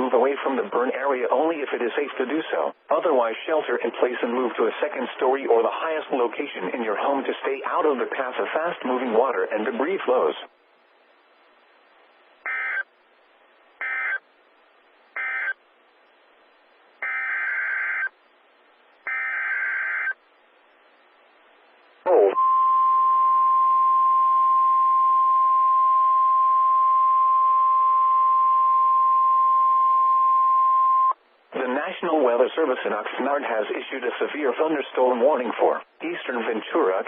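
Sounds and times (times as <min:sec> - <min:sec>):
steady warning alarm tone: 0:22.3 - 0:31.2.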